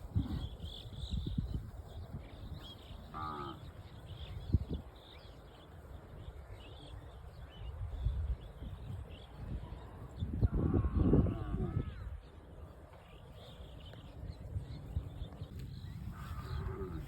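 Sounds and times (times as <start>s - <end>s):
cattle mooing: 3.1s - 3.6s.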